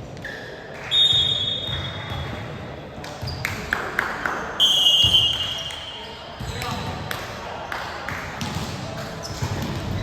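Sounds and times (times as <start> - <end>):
volleyball strikes and thuds: 8.4 - 10.0.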